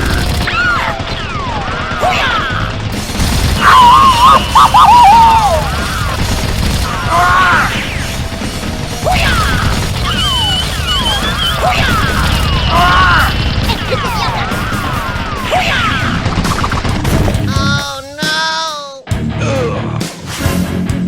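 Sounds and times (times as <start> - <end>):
background music: 0.0 - 21.0.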